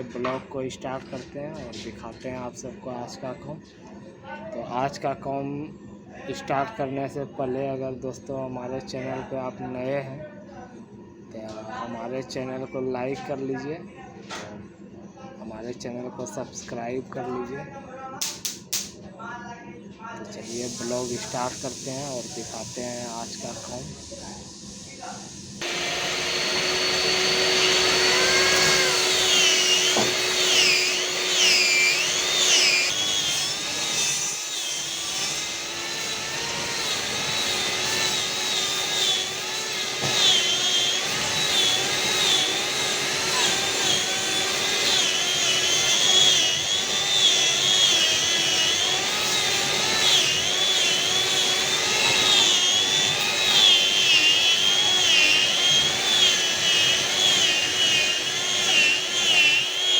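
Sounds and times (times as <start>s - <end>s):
electric sander whining on wood: 25.4s - 59.9s.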